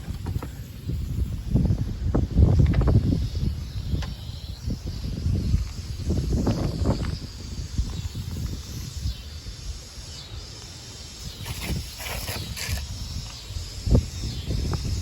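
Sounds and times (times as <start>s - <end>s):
wind buffeting microphone: 0.0s - 10.1s, 11.2s - 15.0s
high insect-like call: 0.0s - 15.0s.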